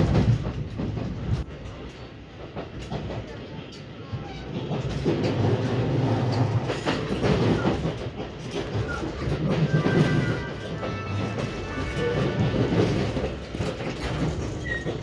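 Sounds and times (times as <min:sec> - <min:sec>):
electric train rumbling on rails: 0:00.0 - 0:15.0
wheels clattering over rail joints: 0:04.6 - 0:15.0.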